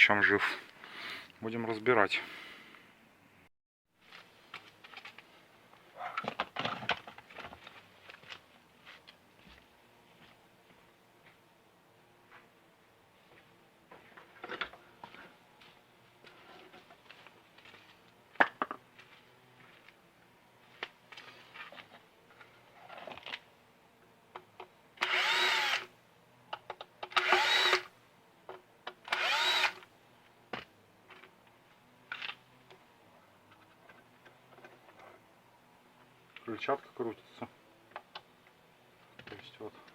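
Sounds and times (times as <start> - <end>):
cordless drill motor whine: 25.0 - 25.9, 27.1 - 27.9, 29.0 - 29.8.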